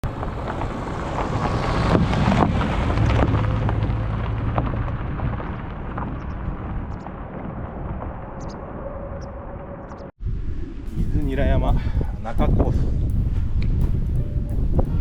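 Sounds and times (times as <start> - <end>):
low hum: 0.0 - 15.0
wind rushing against microphone: 0.0 - 15.0.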